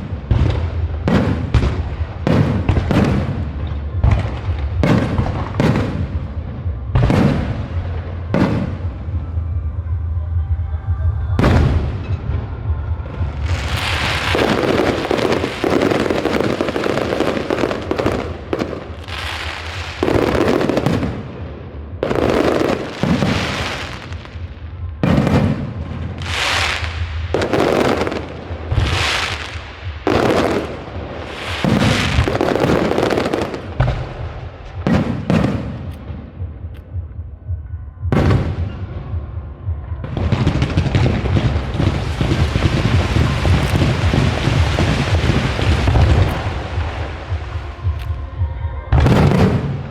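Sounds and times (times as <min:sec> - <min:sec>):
fireworks crackling: 0:00.0 - 0:09.3, 0:11.4 - 0:36.9, 0:40.0 - 0:48.3
fireworks bursting: 0:00.0 - 0:09.7, 0:11.4 - 0:37.2, 0:38.1 - 0:49.9
steady low hum: 0:00.0 - 0:20.3.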